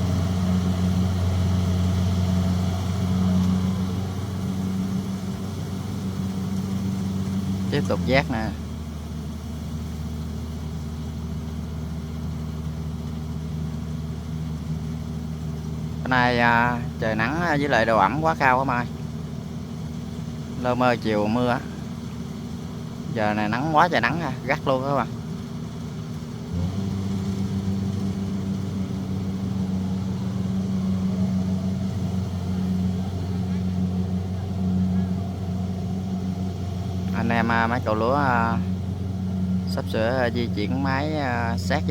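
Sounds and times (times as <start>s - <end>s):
diesel engine droning: 0.0s - 41.9s.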